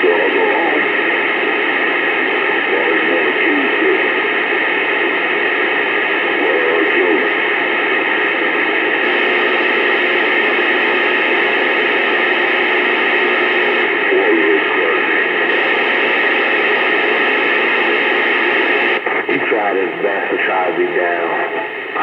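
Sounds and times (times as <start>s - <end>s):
faint voices: 2.6s - 4.2s, 6.3s - 7.4s, 8.5s - 22.0s
loud steady hiss: 9.0s - 13.9s, 14.7s - 19.0s.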